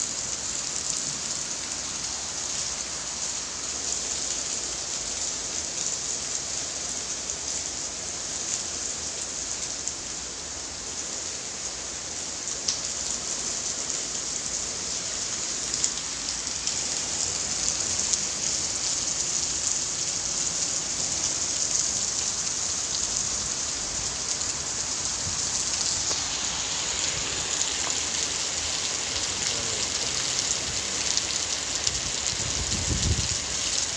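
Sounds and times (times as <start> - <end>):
rain falling steadily: 0.0 - 33.9.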